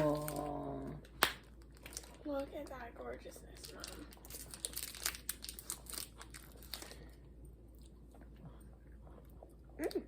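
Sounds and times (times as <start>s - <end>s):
person humming mm: 0.0s - 1.0s
crunchy chewing of chocolate bar: 3.7s - 7.2s.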